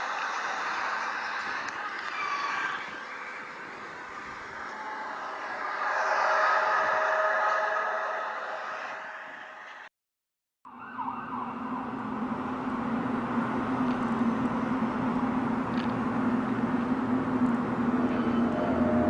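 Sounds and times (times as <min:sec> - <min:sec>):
steady droning hum: 0:02.8 - 0:09.9, 0:11.8 - 0:19.0.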